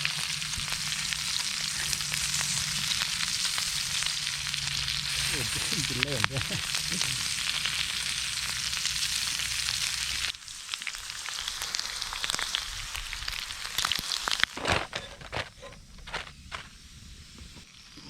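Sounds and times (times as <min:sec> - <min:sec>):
meat sizzling in a pan: 0:00.0 - 0:14.6, 0:15.6 - 0:18.0
fat popping: 0:13.7 - 0:16.8.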